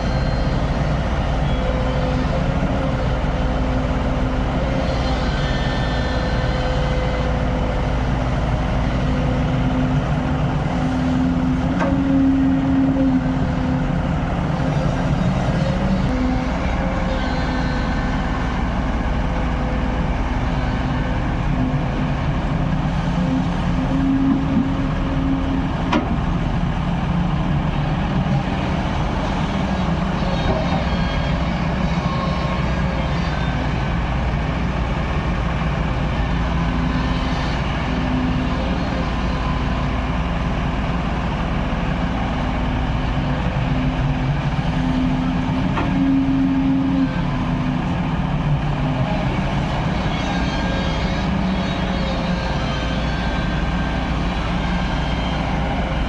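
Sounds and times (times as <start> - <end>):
backhoe diesel engine running: 0.0 - 56.0.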